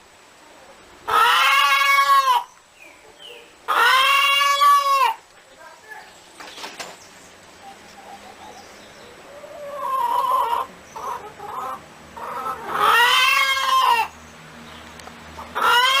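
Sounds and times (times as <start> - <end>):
hen clucking and cackling: 0.4 - 5.2, 7.4 - 14.2, 15.3 - 16.0.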